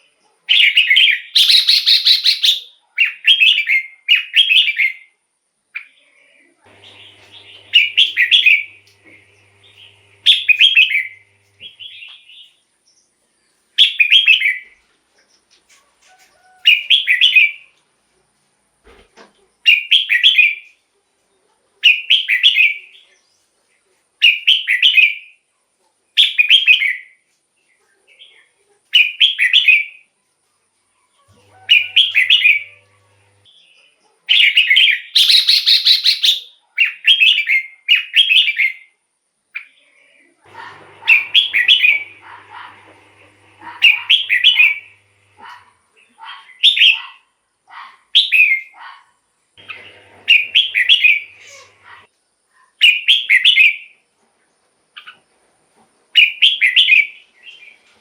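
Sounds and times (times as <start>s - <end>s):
bulbul singing warbled phrases: 43.6s - 46.2s.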